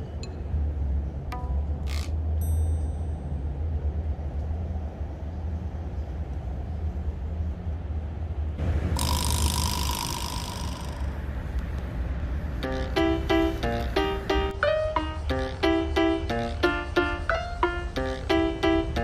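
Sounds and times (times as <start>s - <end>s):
buzzing hiss with steady tone: 8.6s - 19.0s.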